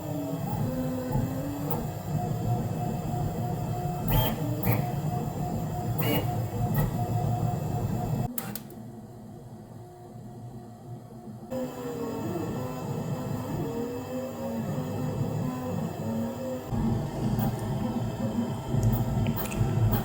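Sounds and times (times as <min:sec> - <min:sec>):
stepper motor whine: 0:00.0 - 0:08.3, 0:11.5 - 0:20.0
machine hum: 0:00.0 - 0:20.0.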